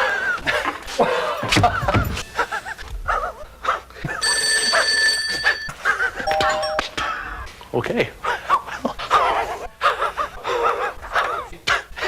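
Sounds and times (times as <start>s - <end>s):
steady ringing tone: 4.2s - 7.2s.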